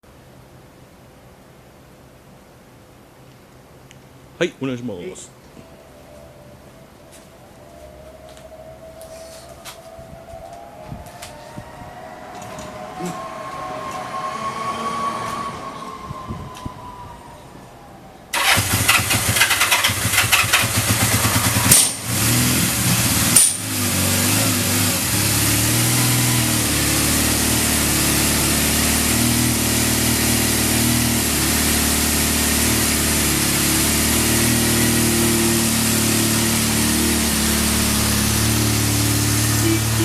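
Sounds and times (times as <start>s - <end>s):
motorcycle engine starting and idling: 18.3s - 40.0s.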